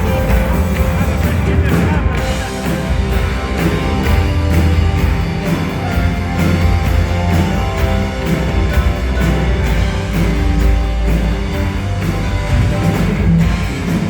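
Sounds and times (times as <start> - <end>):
rock band playing live: 0.0 - 14.0.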